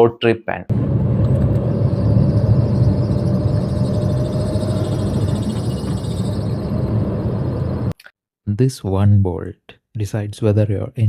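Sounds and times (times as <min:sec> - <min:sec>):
car engine droning: 0:00.7 - 0:07.9
faint steady tone: 0:01.2 - 0:07.9.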